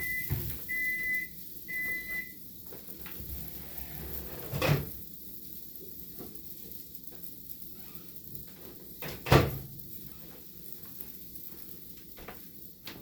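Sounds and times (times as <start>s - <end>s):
electronic high beeps: 0.0s - 2.4s.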